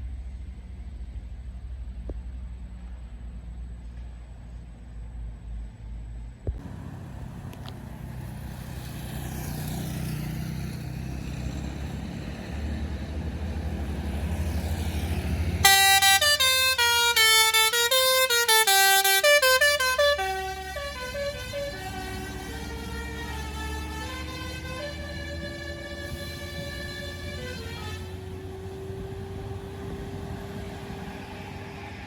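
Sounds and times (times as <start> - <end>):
bus engine rumble: 0.0 - 32.0
melodic bus horn: 14.2 - 29.4.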